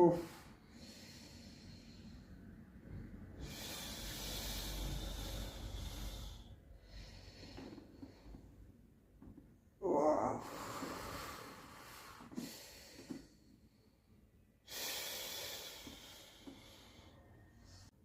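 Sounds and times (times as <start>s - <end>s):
person exhaling heavily: 3.4s - 7.6s, 14.7s - 17.2s.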